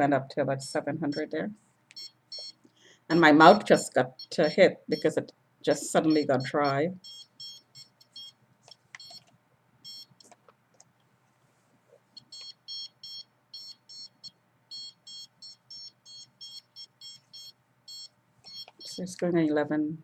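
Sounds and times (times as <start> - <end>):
radiation meter beeping: 1.1 - 2.6, 3.4 - 8.4, 9.0 - 10.2, 12.2 - 19.2.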